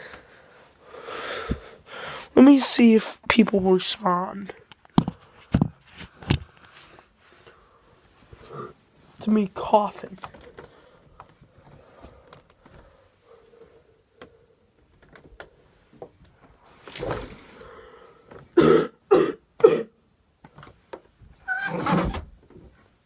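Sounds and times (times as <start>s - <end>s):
man coughing: 18.6s - 20.0s.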